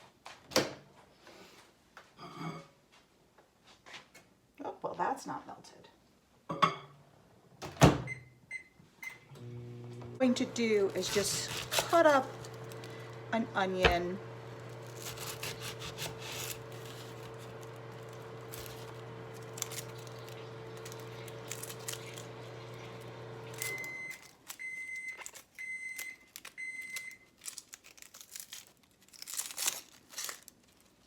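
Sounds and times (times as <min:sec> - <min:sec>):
microwave beeps: 0:08.0 - 0:14.8, 0:22.2 - 0:27.2
microwave oven humming: 0:09.0 - 0:24.8.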